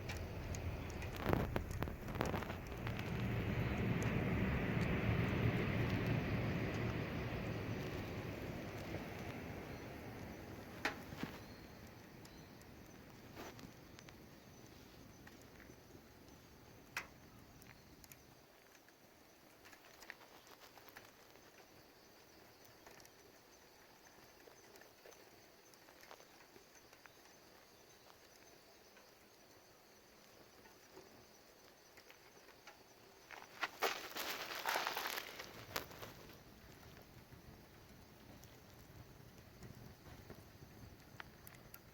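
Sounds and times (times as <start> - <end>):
wood fire crackling: 0.0 - 23.2, 30.2 - 41.9.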